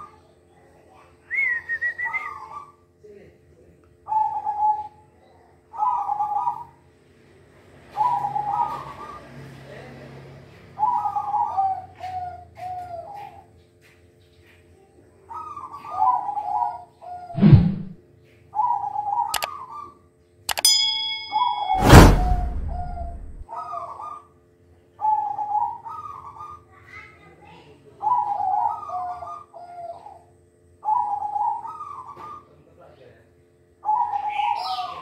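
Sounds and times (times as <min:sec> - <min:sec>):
dove cooing: 0:04.1 - 0:06.8, 0:07.9 - 0:09.2, 0:10.8 - 0:13.5, 0:15.2 - 0:17.3, 0:18.6 - 0:20.0, 0:23.5 - 0:24.3, 0:25.0 - 0:27.1, 0:28.0 - 0:32.5, 0:33.8 - 0:35.0
sharp thump: 0:17.4 - 0:18.0, 0:21.3 - 0:23.4.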